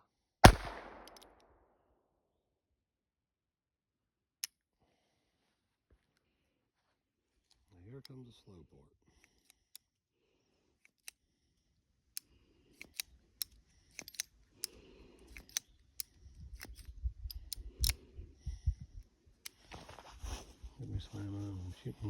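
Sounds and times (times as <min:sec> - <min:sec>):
cartridges rattling: 0:00.4 - 0:01.3.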